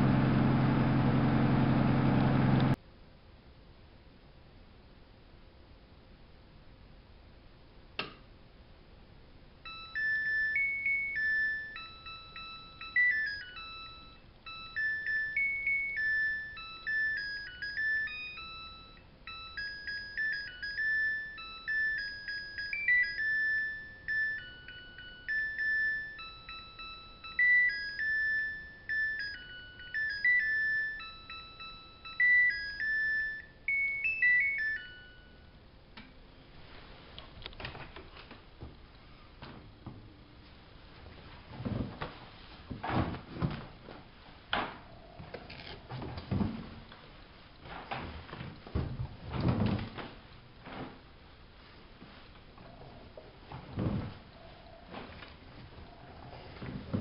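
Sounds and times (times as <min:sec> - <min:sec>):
washing machine beeping melody: 0:09.6 - 0:35.6.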